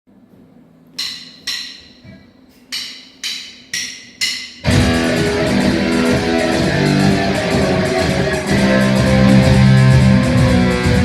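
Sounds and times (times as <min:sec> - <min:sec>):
drumsticks clicking together: 0:01.0 - 0:04.6
loud strummed guitars: 0:04.6 - 0:11.0.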